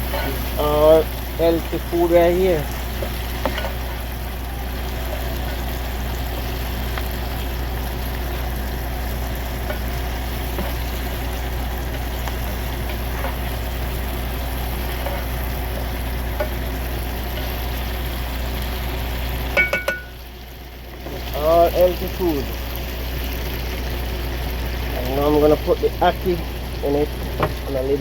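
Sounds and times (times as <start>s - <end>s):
fish frying in a skillet: 0.0s - 28.0s
truck engine idling: 0.0s - 28.0s
stirring ticks: 5.1s - 19.0s.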